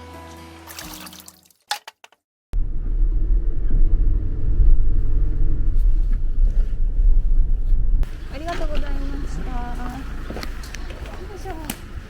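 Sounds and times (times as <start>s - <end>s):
loud low rumble: 2.6s - 10.8s.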